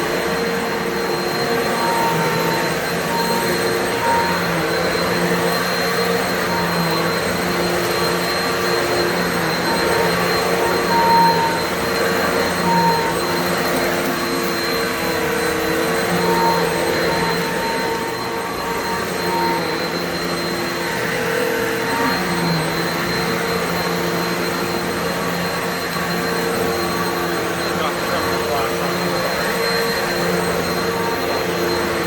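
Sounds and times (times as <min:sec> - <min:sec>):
vacuum cleaner running: 0:00.0 - 0:32.0.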